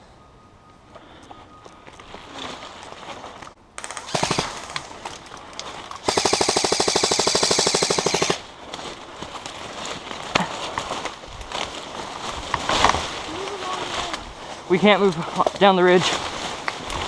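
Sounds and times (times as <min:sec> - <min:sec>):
airsoft rifle firing bursts: 0:03.8 - 0:04.9, 0:06.0 - 0:08.5.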